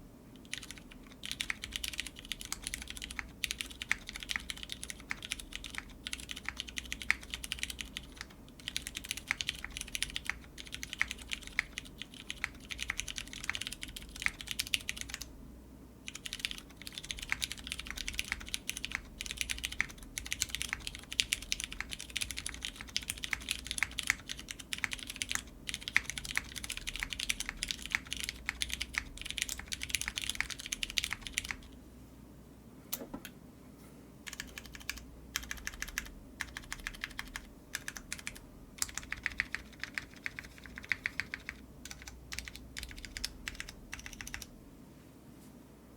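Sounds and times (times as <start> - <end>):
fast typing on mechanical keyboard: 0.4 - 15.3, 16.1 - 31.8, 34.3 - 44.5.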